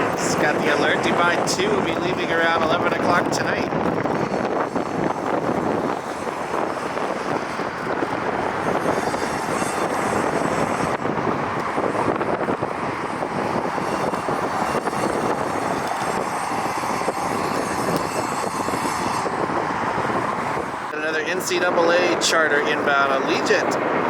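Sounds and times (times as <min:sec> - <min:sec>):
jet engine noise: 0:00.0 - 0:24.0
wind buffeting microphone: 0:00.0 - 0:24.0.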